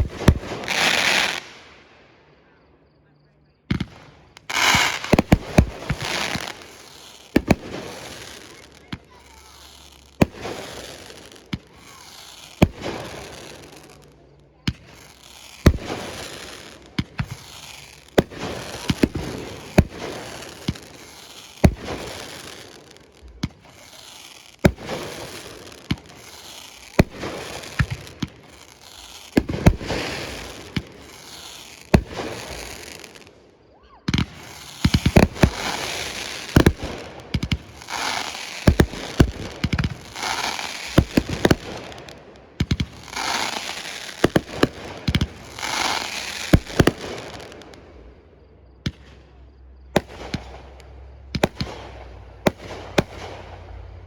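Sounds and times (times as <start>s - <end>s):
fireworks crackling and hissing: 0.0s - 3.0s, 3.6s - 54.0s.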